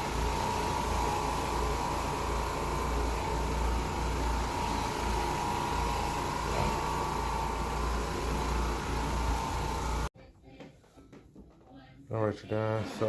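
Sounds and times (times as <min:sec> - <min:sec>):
carpet cleaner motor running: 0:00.0 - 0:10.1.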